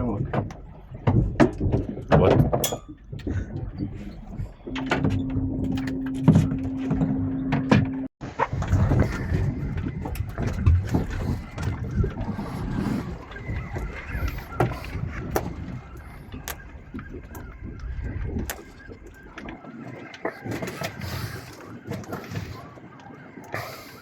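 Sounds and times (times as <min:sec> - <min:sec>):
boat engine rumble: 0:00.0 - 0:24.0
water: 0:00.0 - 0:24.0
wind: 0:00.0 - 0:24.0.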